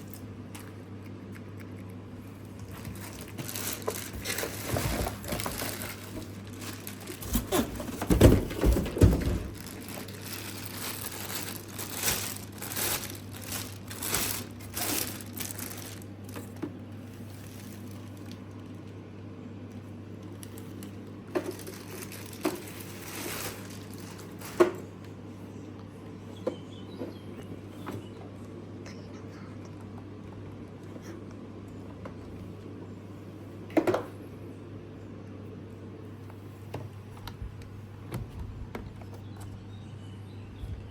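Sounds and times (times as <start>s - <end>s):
packaging crinkling and rustling: 2.5s - 18.8s, 20.2s - 24.9s.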